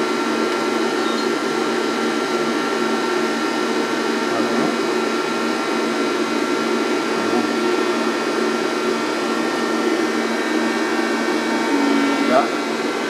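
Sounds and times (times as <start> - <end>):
lathe humming and whining: 0.0 - 13.0.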